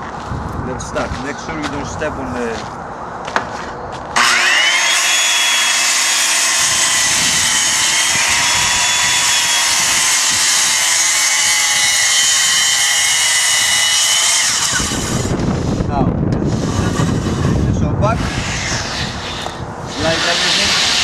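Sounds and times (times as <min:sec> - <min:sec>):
circular saw cutting plywood: 0:04.2 - 0:15.8, 0:16.4 - 0:21.0.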